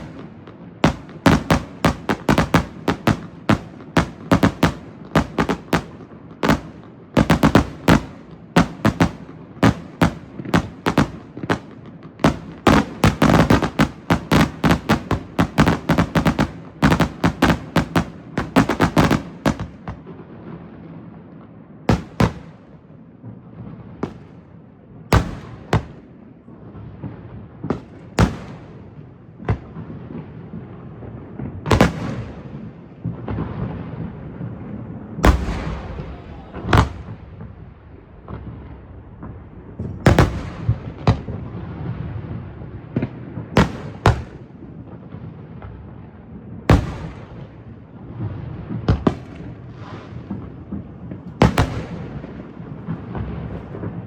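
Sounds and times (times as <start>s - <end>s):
fireworks bursting: 0.0s - 46.0s, 46.6s - 54.0s
rumbling echo: 35.2s - 41.6s.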